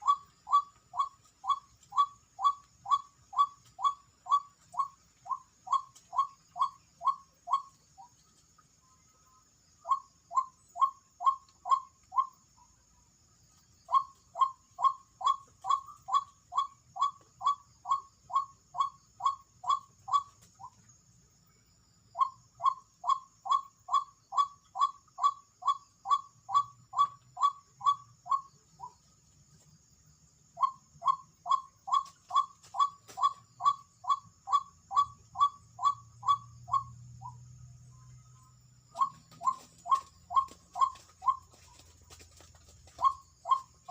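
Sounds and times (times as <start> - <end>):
waterhen calling: 0.0 - 7.7, 39.0 - 41.9, 42.9 - 43.9.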